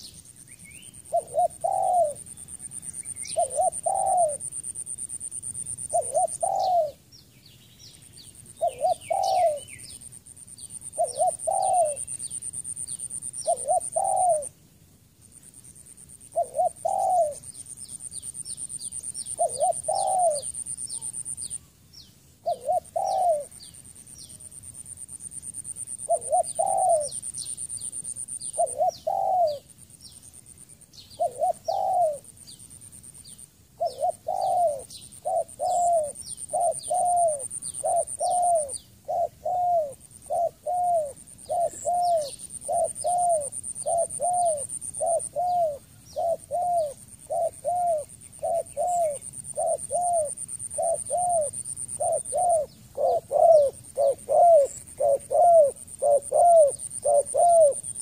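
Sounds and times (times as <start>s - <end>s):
small birds chirping: 0.0s - 5.1s, 5.8s - 14.6s, 15.4s - 58.0s
dove cooing: 1.1s - 4.6s, 5.8s - 7.0s, 8.6s - 9.8s, 10.9s - 12.2s, 13.3s - 14.6s, 16.3s - 17.5s, 19.0s - 21.3s, 22.4s - 23.6s, 26.0s - 27.2s, 28.1s - 29.7s, 31.2s - 32.3s, 33.8s - 58.0s.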